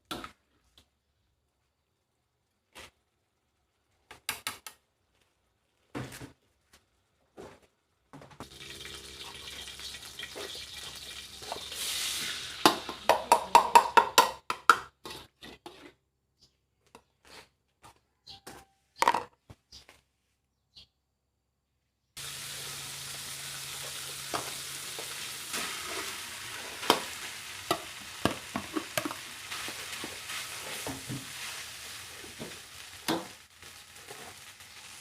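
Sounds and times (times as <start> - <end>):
water running from a tap: 8.4 - 13.2, 22.2 - 29.4
pots and dishes clattering: 26.8 - 31.4.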